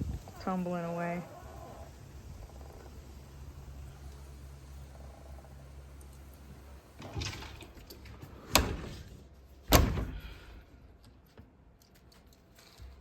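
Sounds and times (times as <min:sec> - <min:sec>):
door rattle: 0:06.9 - 0:09.1, 0:09.7 - 0:10.3
door banging shut: 0:09.7 - 0:10.4.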